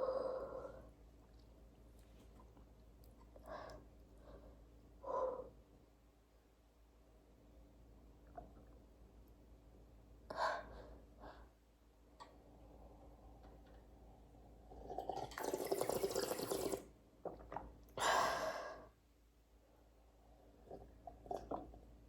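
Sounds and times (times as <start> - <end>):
stomach gurgling: 20.6 - 21.9.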